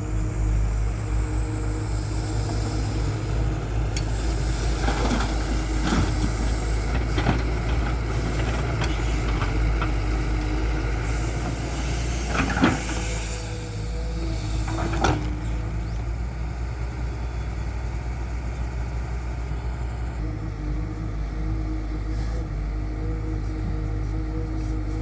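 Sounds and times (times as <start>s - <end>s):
excavator diesel engine running: 0.0s - 25.0s.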